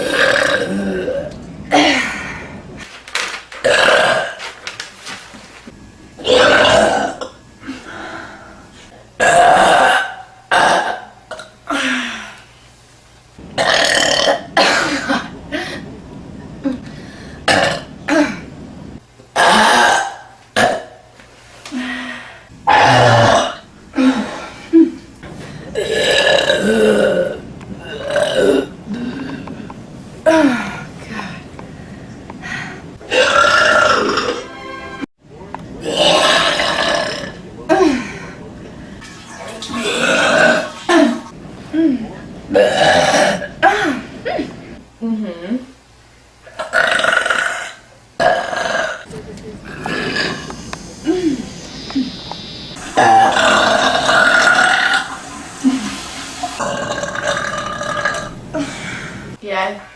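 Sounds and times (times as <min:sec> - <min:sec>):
woman burping loudly: 0:00.0 - 0:02.1, 0:03.6 - 0:04.4, 0:06.2 - 0:07.4, 0:09.2 - 0:11.8, 0:13.6 - 0:15.3, 0:17.5 - 0:18.4, 0:19.4 - 0:21.0, 0:22.7 - 0:24.2, 0:25.8 - 0:29.5, 0:33.1 - 0:34.5, 0:35.8 - 0:38.0, 0:39.7 - 0:41.3, 0:42.5 - 0:44.4, 0:46.5 - 0:55.9, 0:56.6 - 0:58.7.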